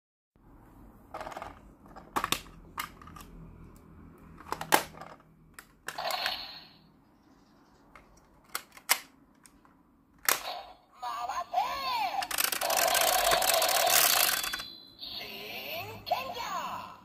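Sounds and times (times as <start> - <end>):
plastic toy clicks and snaps: 8.5 - 9.6, 10.2 - 10.5, 12.2 - 14.6.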